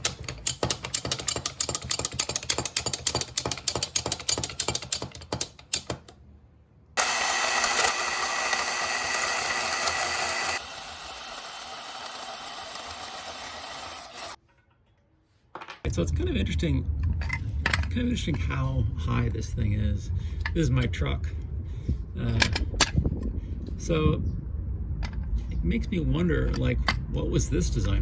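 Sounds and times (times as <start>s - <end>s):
car jack ratchet clicking: 0.0s - 6.1s, 7.0s - 14.4s.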